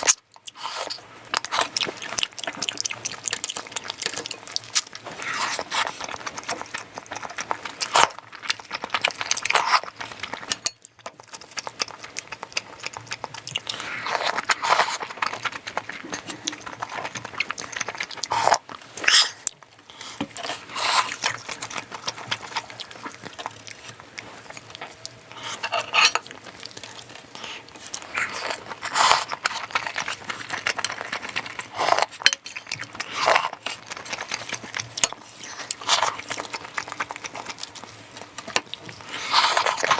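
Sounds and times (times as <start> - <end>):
wet chewing and biting: 0.0 - 39.9.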